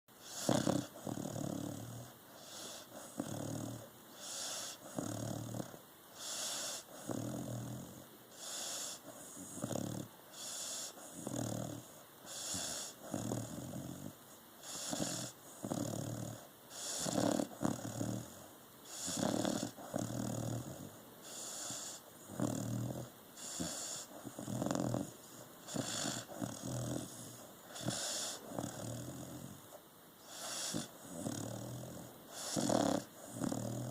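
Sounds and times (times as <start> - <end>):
person snoring: 0.2 - 33.9.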